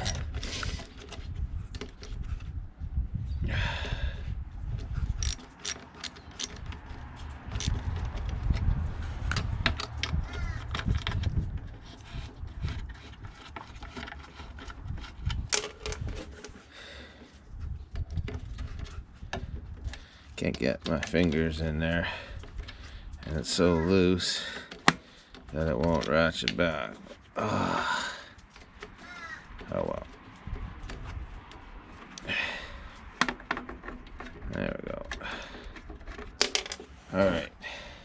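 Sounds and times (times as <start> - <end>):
ratchet wrench clicking: 0.0 - 0.6, 5.2 - 6.6, 7.6 - 7.8
wind rumbling on microphone: 0.0 - 5.5, 6.3 - 13.4, 14.4 - 16.4, 17.4 - 20.1, 30.4 - 31.8.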